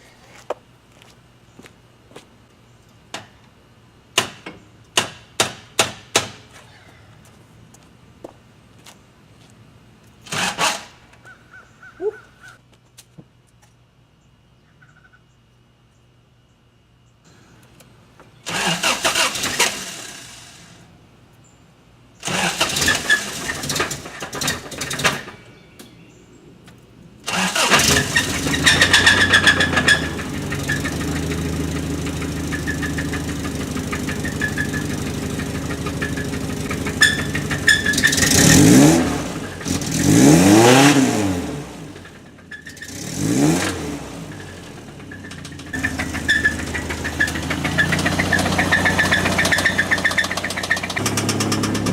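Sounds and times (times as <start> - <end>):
engine cranking and starting: 10.2 - 11.0, 18.4 - 20.9, 22.2 - 25.5, 27.2 - 51.9
engine revving: 10.2 - 11.0, 18.5 - 20.8, 22.2 - 25.4, 27.2 - 51.9.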